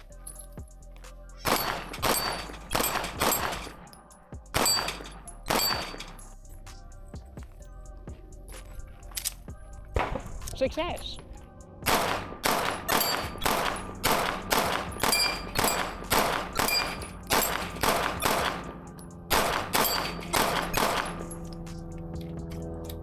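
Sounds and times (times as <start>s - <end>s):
pistol shots: 1.4s - 3.8s, 4.5s - 6.0s, 11.8s - 21.4s.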